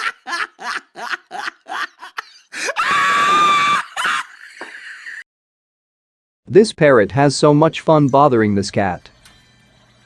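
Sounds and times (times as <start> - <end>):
laughter in rhythmic bursts: 0.0 - 2.6, 3.9 - 5.2
loud scream: 2.6 - 4.7.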